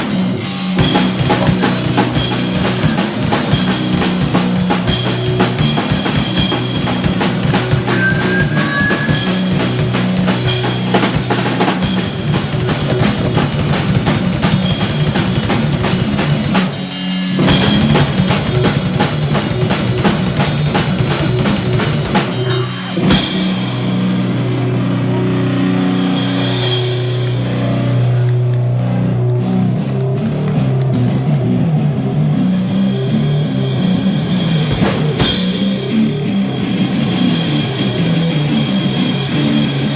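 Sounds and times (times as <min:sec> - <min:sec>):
low guitar notes: 0:00.0 - 0:13.7
cymbals: 0:00.0 - 0:28.0
rock band playing loudly: 0:00.0 - 0:39.9.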